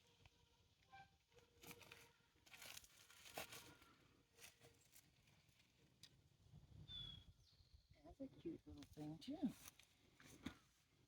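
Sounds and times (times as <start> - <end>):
faint rustles and crunches: 1.6 - 6.2, 8.8 - 11.0.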